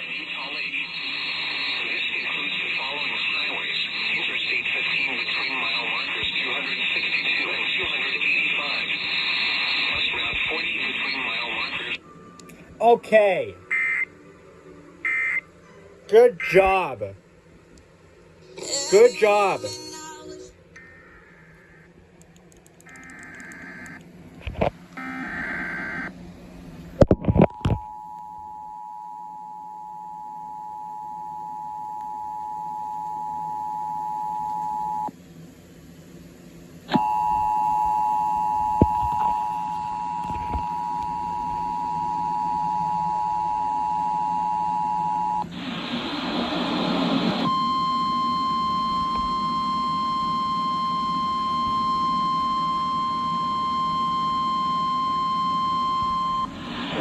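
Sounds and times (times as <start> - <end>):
burst of static: 0.0 - 12.0, 45.4 - 49.3
steady tone: 16.1 - 17.2
warbling data bursts: 22.6 - 24.0.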